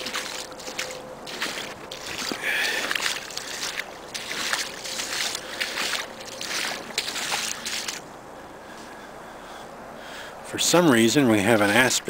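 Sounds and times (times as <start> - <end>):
boots splashing through water: 0.0 - 8.0, 11.4 - 12.0.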